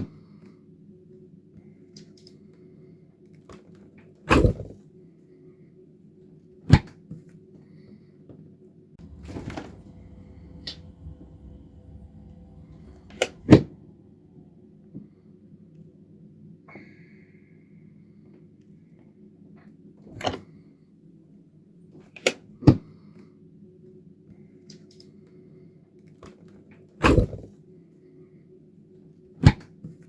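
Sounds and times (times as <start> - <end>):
steady low hum: 9.0 - 16.0.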